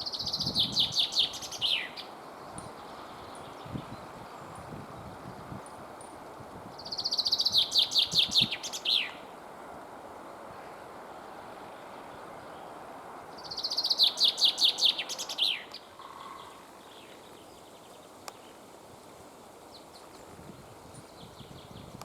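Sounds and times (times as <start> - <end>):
chaffinch singing: 0.0 - 4.8, 6.0 - 9.3, 12.4 - 18.7
steady background hiss: 0.0 - 22.0.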